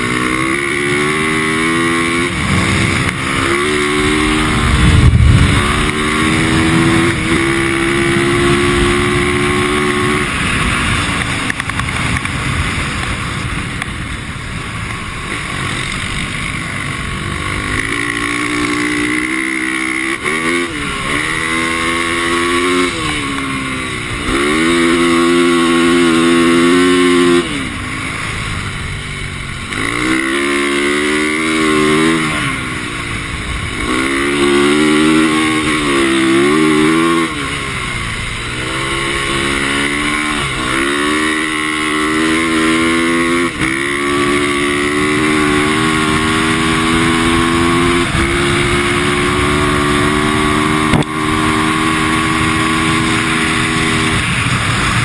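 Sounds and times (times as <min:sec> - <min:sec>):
dirt bike engine revving: 0:00.0 - 0:55.0
loud low rumble: 0:02.2 - 0:07.0.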